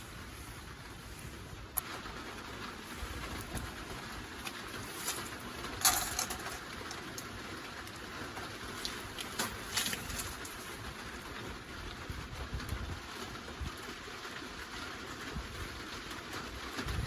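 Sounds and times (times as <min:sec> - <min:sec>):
wood fire crackling and popping: 0:01.1 - 0:13.9.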